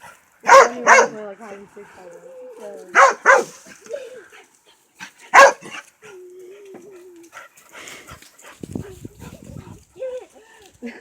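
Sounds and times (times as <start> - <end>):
dog barking: 0.4 - 1.2, 3.0 - 3.5, 5.3 - 5.8.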